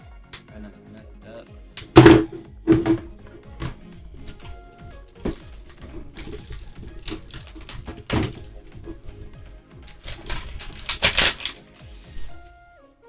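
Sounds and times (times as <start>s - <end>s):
background music: 0.0s - 13.0s
plastic wrap and card tearing: 5.2s - 9.3s, 9.9s - 12.4s.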